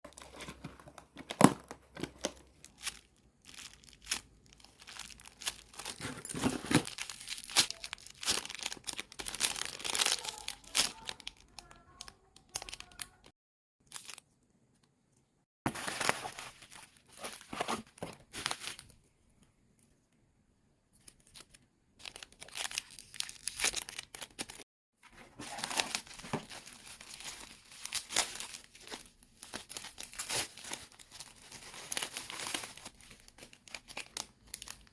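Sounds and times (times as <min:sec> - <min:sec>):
packaging crinkling and tearing: 0:00.1 - 0:13.3, 0:13.9 - 0:14.3, 0:15.7 - 0:19.0, 0:21.0 - 0:24.6, 0:25.2 - 0:34.9.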